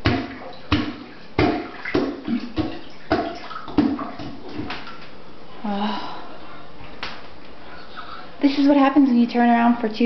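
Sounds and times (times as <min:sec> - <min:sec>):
plunger sloshing in toilet water: 0:00.0 - 0:05.2.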